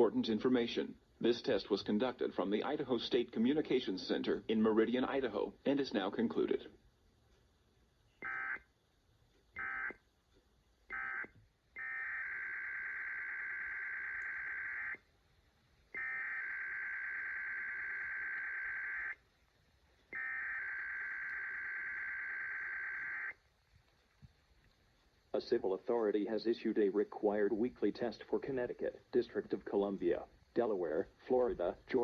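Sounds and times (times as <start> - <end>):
buzzing two-tone digital data bursts: 8.2 - 8.6, 9.6 - 10.0, 10.9 - 15.0, 16.0 - 19.2, 20.2 - 23.3.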